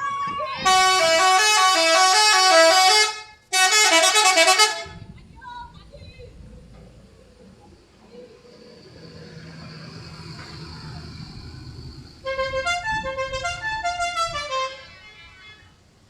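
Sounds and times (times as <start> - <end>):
multi-tone vehicle horn melody: 0.1 - 5.2, 12.2 - 15.6
vehicle engine approaching: 4.3 - 14.2.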